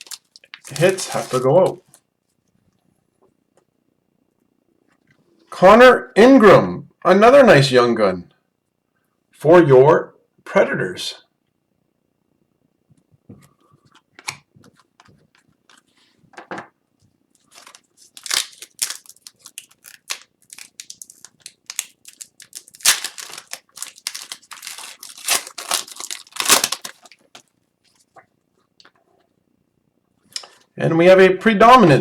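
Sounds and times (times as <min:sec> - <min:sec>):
wrapper tearing and crinkling: 0:00.0 - 0:02.0, 0:17.4 - 0:27.5.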